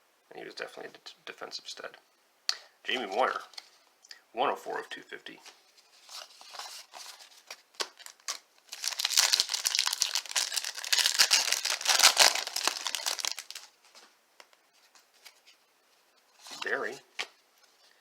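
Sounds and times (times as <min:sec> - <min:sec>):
wrapper tearing and crinkling: 0:07.8 - 0:13.8.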